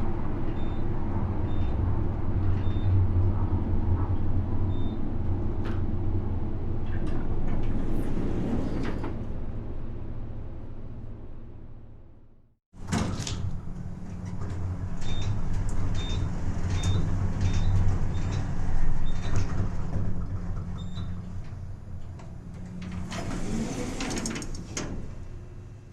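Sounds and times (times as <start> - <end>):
elevator doors sliding: 0.0 - 10.0, 12.8 - 25.9
elevator car humming: 12.8 - 25.9.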